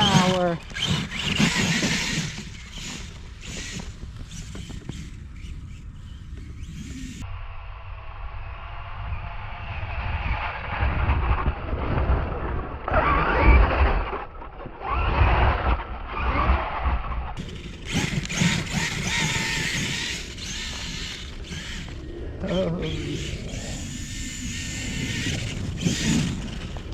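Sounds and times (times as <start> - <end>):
electric motor whine: 0.0 - 7.3, 17.4 - 26.9.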